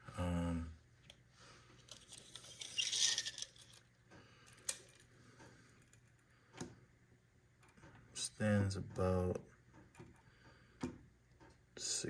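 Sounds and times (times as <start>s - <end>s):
plastic figure rustling: 1.0s - 6.2s.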